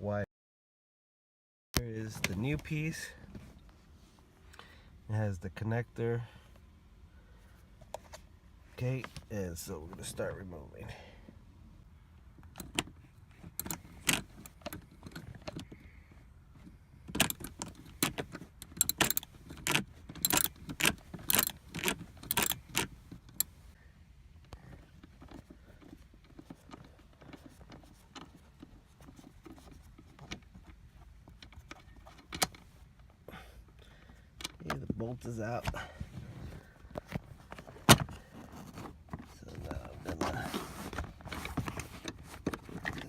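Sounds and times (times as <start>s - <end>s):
tool handling: 12.4s - 15.8s, 16.6s - 23.6s, 36.9s - 43.0s
socket wrench ratchet clicks: 13.6s - 15.6s, 17.2s - 23.5s.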